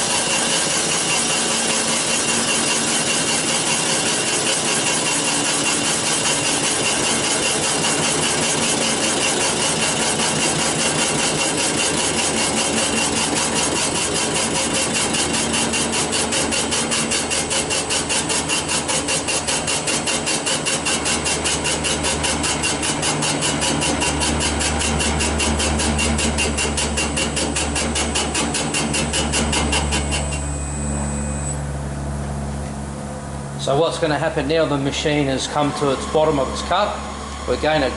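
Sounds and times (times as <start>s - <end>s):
boring machine cutting metal: 0.0s - 31.8s, 33.6s - 37.9s
deep hum: 29.0s - 37.9s.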